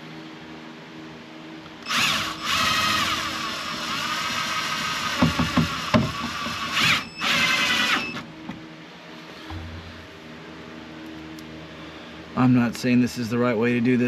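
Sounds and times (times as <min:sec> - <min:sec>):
power drill driving screws: 0:01.8 - 0:08.2.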